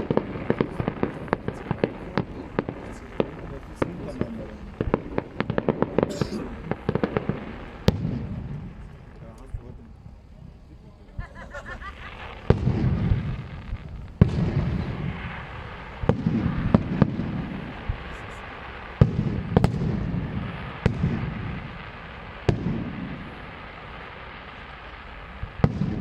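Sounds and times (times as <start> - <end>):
low rolling rumble: 0.0 - 25.6
fireworks bangs: 0.0 - 26.0.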